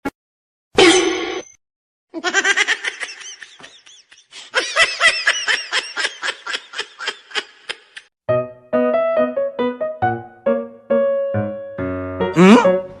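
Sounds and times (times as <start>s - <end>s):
person laughing hard: 2.2s - 8.0s.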